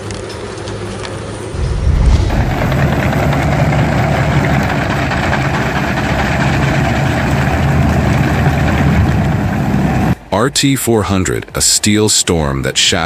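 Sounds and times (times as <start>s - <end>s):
heavy machinery engine droning: 1.5s - 10.2s.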